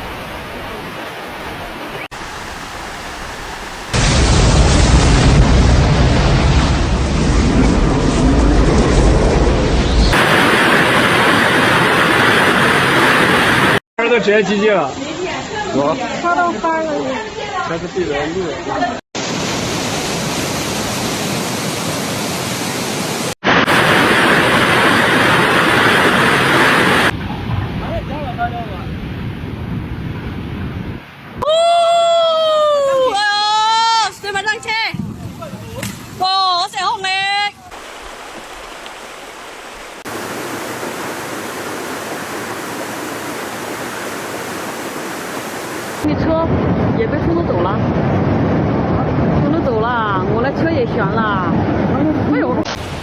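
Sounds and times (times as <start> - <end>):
water rushing: 0.0 - 27.2, 35.8 - 46.4, 52.6 - 53.0.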